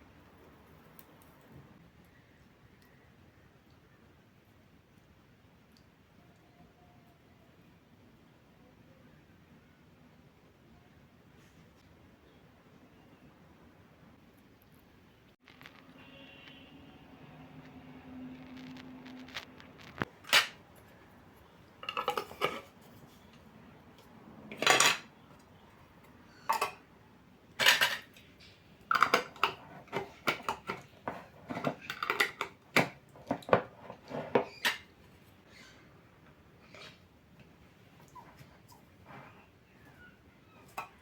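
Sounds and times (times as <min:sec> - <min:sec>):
dishes and cutlery clinking: 0:21.8 - 0:22.8, 0:24.5 - 0:25.1, 0:26.4 - 0:26.8, 0:27.6 - 0:34.9.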